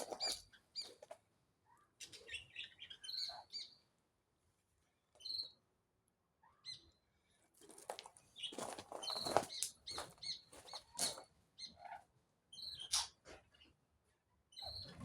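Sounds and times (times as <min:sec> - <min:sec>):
birds chirping: 0:00.0 - 0:01.0, 0:08.4 - 0:11.9
harsh scratchy bird calls: 0:00.0 - 0:01.0, 0:08.4 - 0:12.0.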